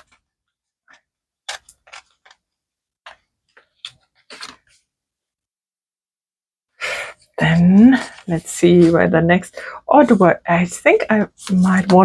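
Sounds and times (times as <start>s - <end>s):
paper rustle: 0.9s - 2.4s, 3.1s - 4.9s.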